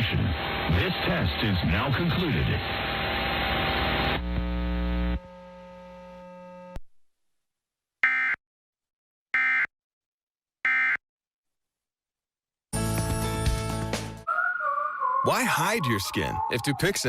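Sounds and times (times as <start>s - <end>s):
steady buzzing hum: 2.6s - 6.8s.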